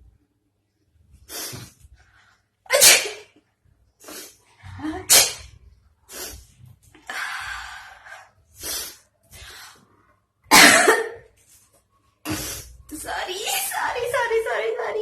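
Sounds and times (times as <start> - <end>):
person sneezing: 2.7 - 3.3, 5.0 - 5.5
breathy sounds and inhaling: 6.1 - 10.2.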